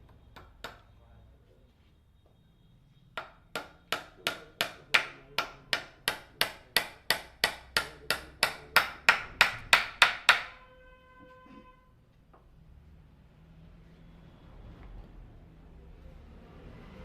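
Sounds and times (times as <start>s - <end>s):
hammer striking: 0.0s - 1.0s, 3.1s - 10.6s.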